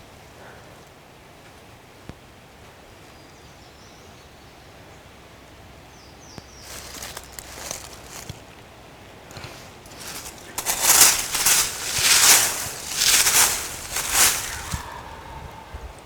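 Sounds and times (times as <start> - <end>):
rustling in dry leaves: 6.5 - 16.0.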